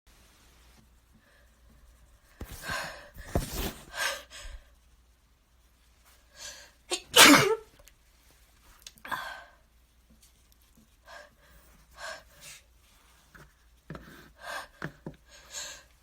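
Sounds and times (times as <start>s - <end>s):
person sneezing: 6.9s - 7.7s.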